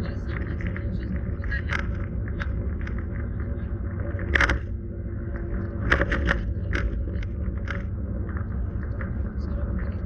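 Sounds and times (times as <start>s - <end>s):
car road and engine rumble: 0.0s - 10.0s.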